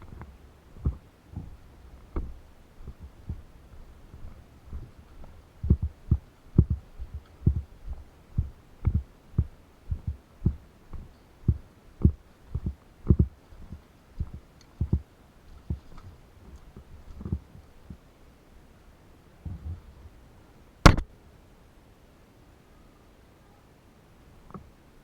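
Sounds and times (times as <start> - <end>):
footsteps as dull thumps: 0.0 - 15.0.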